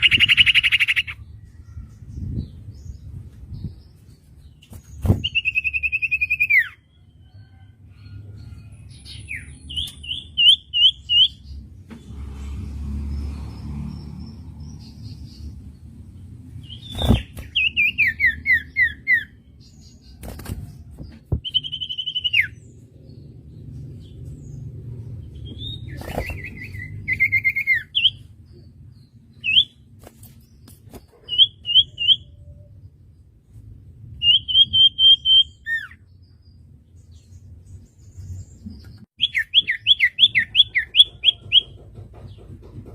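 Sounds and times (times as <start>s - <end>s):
bird singing high whistled notes: 21.4s - 22.6s.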